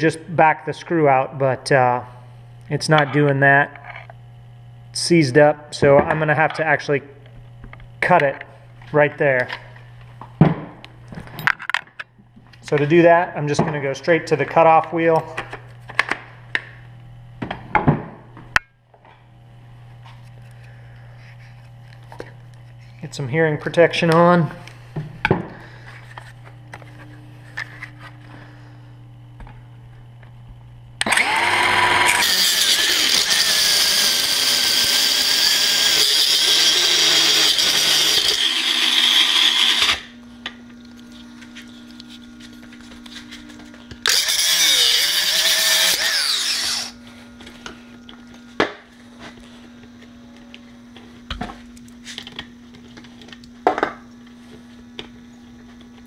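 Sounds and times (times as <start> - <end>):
cutoff wheel grinding steel: 31.0 - 40.2, 44.0 - 47.0.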